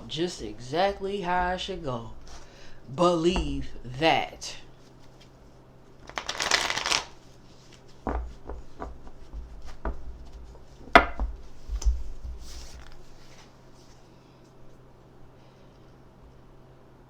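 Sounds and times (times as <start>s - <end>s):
cards riffle shuffling: 6.0s - 7.9s.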